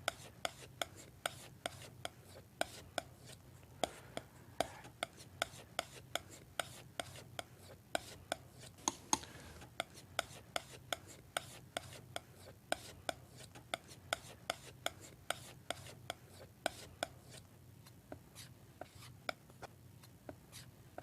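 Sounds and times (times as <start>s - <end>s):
palette knife scraping paint: 0.0s - 20.7s
palette knife tapping: 4.6s - 17.2s.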